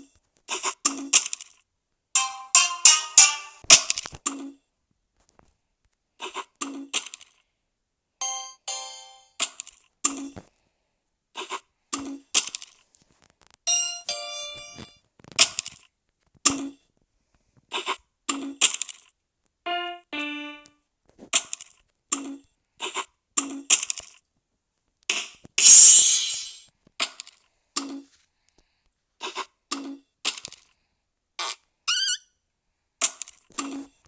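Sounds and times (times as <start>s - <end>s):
doorbell chime tunes: 8.2s - 9.3s, 13.7s - 15.0s.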